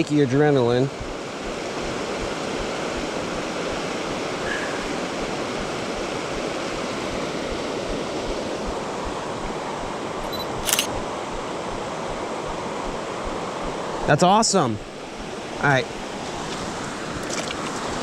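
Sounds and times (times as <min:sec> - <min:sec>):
flowing water rushing: 0:00.0 - 0:18.0
sharp click: 0:10.2 - 0:11.0.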